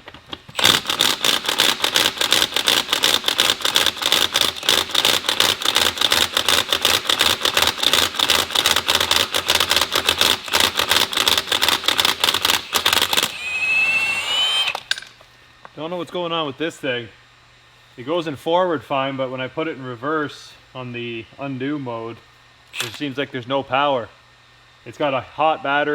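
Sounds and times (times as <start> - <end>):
impact wrench hammering: 0.6 - 15.1
short rising whine: 12.7 - 15.0.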